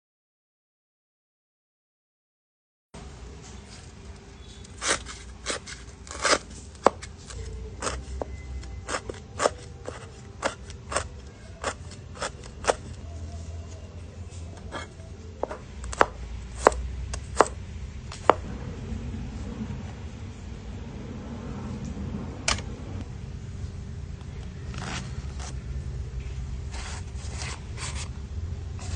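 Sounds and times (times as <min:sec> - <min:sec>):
steady low hum: 0:03.0 - 0:28.9
knife chopping on cutting board: 0:04.8 - 0:07.1, 0:07.8 - 0:12.9, 0:14.6 - 0:18.4.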